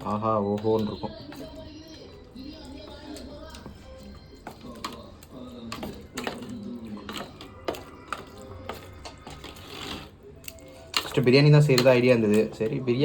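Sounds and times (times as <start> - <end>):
bowl and utensils clicking: 4.4 - 12.8.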